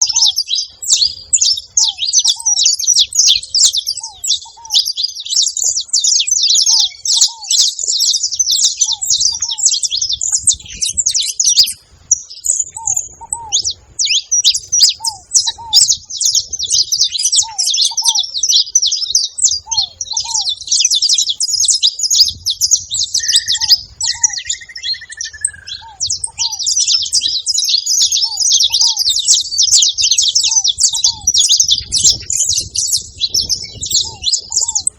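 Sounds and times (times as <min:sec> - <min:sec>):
finch chattering rapid chips: 0:00.0 - 0:34.9
lower hooked bird call: 0:00.0 - 0:34.9
short whistled bird note: 0:23.2 - 0:25.9.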